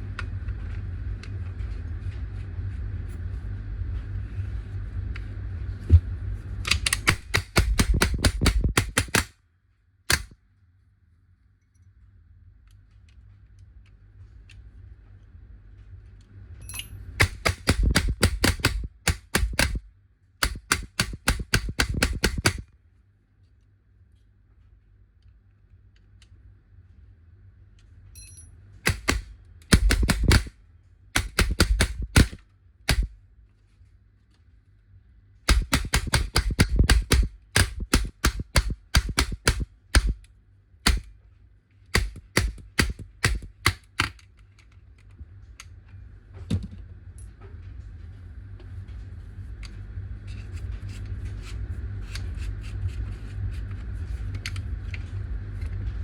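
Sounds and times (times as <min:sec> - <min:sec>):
steady noise: 0:05.4 - 0:09.2, 0:17.2 - 0:22.6, 0:28.9 - 0:30.5, 0:31.2 - 0:33.2, 0:35.5 - 0:41.1, 0:42.0 - 0:43.9
paintball marker shots: 0:06.9 - 0:09.3, 0:10.1 - 0:10.4, 0:17.2 - 0:19.8, 0:20.4 - 0:22.6, 0:28.9 - 0:30.5, 0:31.2 - 0:33.1, 0:35.5 - 0:40.2, 0:40.9 - 0:41.1, 0:41.9 - 0:44.2.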